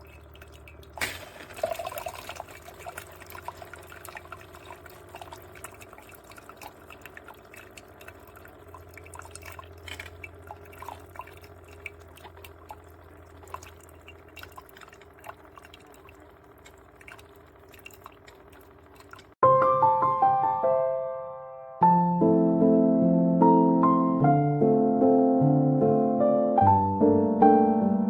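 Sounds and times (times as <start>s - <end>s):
coffee dripping: 0.0s - 19.4s
faint steady hum: 0.0s - 19.4s.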